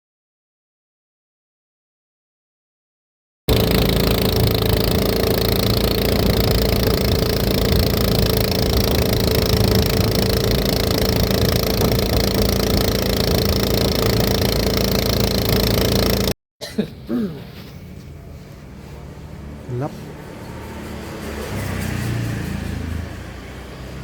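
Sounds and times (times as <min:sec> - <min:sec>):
small engine running: 0:03.5 - 0:16.4, 0:18.8 - 0:24.0.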